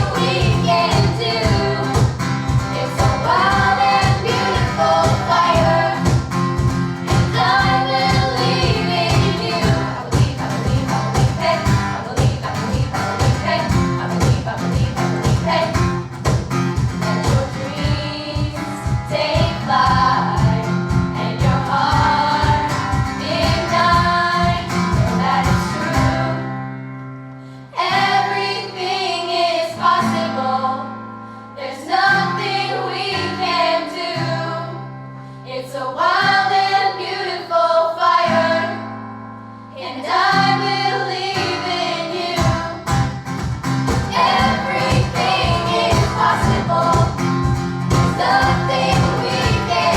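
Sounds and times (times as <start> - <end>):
steady drum beat: 0.0 - 26.3, 42.4 - 49.9
people singing: 0.0 - 26.8, 27.7 - 39.0, 39.7 - 49.9.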